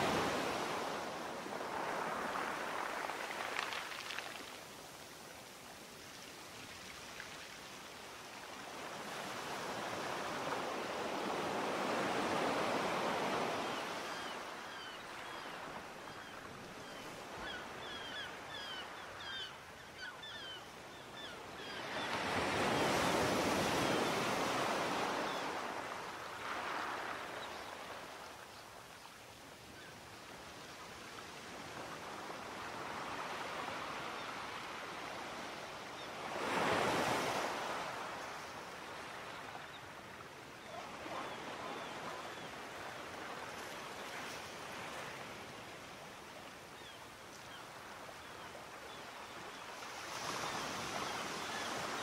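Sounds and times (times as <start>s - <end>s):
sea waves washing onto shore: 0.0s - 7.8s.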